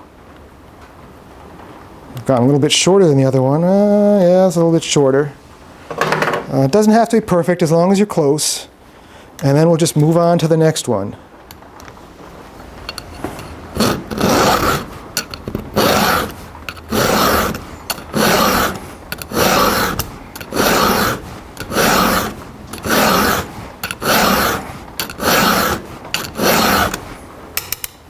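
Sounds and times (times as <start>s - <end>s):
hand file rasping on metal: 12.8s - 27.2s.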